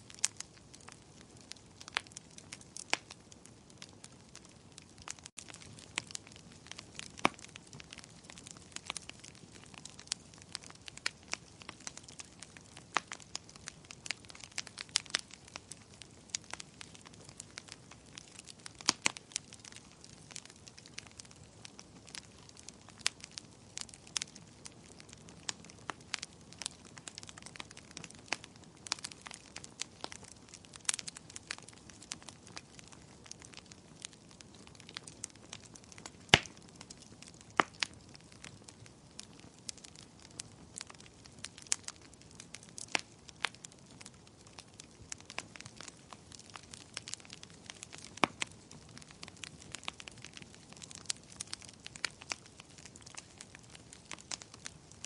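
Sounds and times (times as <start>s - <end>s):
low steady hiss: 0.0s - 55.0s
wood fire crackling: 0.0s - 55.0s.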